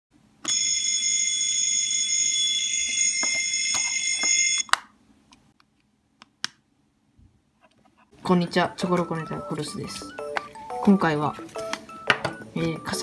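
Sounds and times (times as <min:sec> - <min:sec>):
alarm bell ringing: 0:00.5 - 0:04.6, 0:08.8 - 0:13.0.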